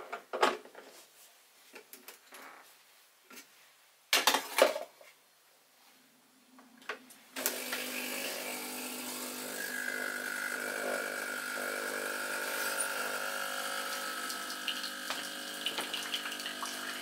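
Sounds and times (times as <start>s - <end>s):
espresso machine pump humming: 7.4s - 17.0s
water flowing: 13.9s - 17.0s.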